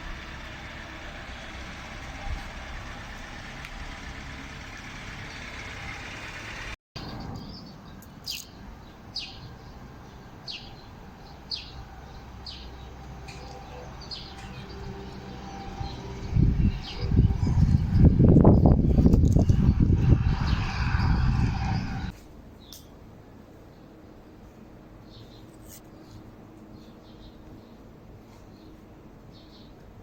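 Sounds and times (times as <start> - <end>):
steady noisy rumble: 0.0 - 30.0
bird chirping: 7.0 - 18.0.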